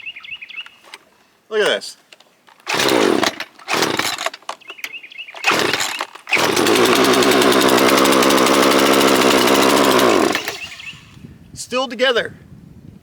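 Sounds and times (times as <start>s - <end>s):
chainsaw pull starter: 2.5s - 11.1s
chainsaw engine running: 2.6s - 4.3s, 5.4s - 11.1s.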